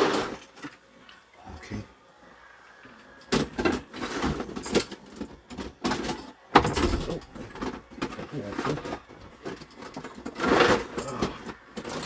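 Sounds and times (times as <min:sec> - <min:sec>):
hard objects clattering and scraping: 0:03.3 - 0:12.0.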